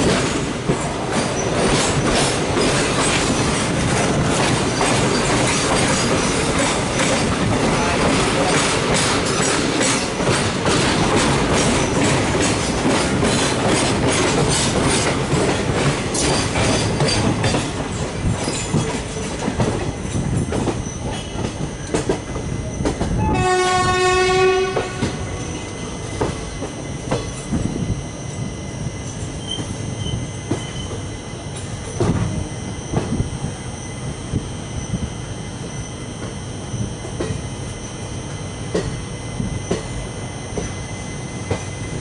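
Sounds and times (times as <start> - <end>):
train wheels clattering over rail joints: 0.0 - 33.5, 36.1 - 42.0
train horn blast: 23.2 - 25.3.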